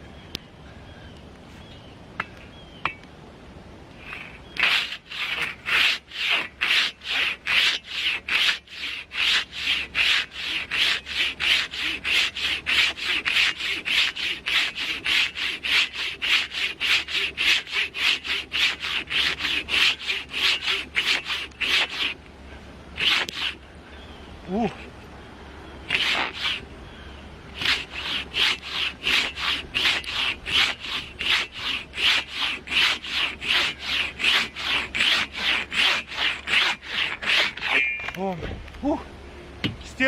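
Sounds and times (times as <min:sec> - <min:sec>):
hand saw cutting a log: 0:04.0 - 0:22.2, 0:23.0 - 0:23.6, 0:25.9 - 0:26.7, 0:27.5 - 0:37.9.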